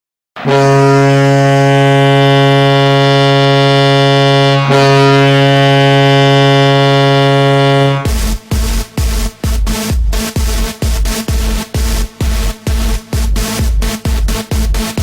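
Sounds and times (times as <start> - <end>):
loud low goal horn: 0.4 - 8.5.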